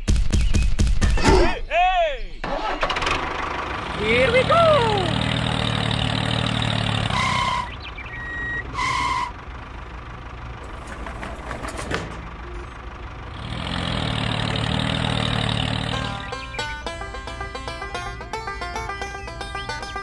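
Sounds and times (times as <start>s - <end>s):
tractor engine running: 2.4s - 20.0s.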